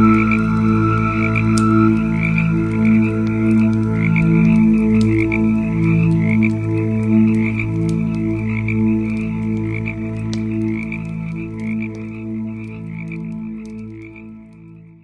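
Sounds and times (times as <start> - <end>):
low drone of overlapping tones: 0.0 - 7.2
campfire crackling: 0.0 - 14.0.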